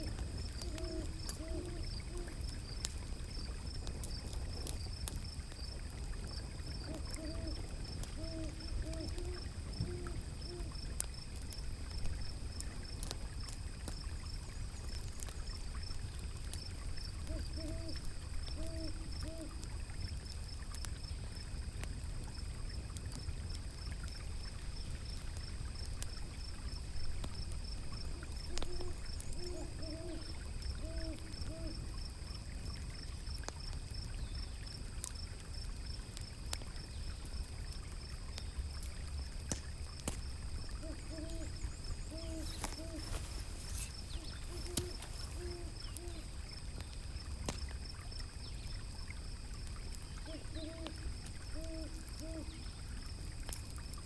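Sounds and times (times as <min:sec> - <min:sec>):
owl hooting: 0:00.0 - 0:02.4, 0:06.9 - 0:07.6, 0:08.2 - 0:10.7, 0:17.2 - 0:19.6, 0:28.5 - 0:31.8, 0:40.8 - 0:46.4, 0:50.3 - 0:51.0, 0:51.6 - 0:52.6
wood fire crackling: 0:00.0 - 0:29.4, 0:34.7 - 0:48.5
water rushing: 0:40.8 - 0:46.5.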